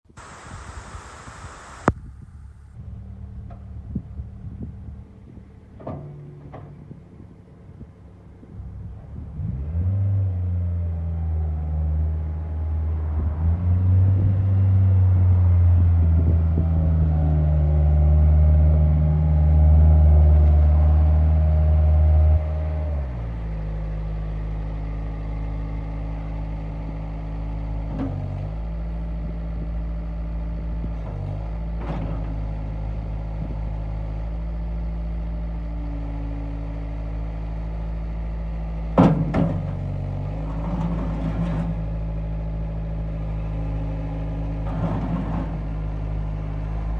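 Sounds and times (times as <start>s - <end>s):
loud clunk: 39.0s - 39.8s.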